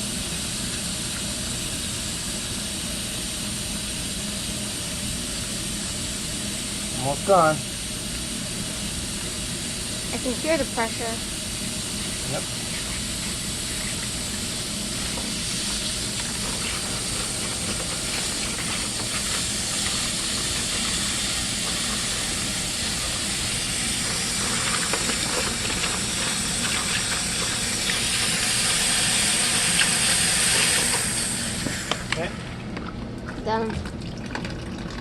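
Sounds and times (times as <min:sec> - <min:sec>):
compressed air hissing through hose: 0:09.8 - 0:32.1.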